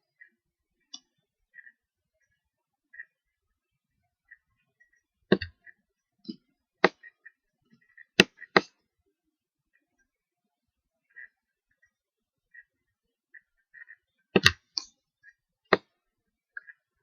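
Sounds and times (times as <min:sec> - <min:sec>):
computer mouse clicking: 0:13.3 - 0:15.9.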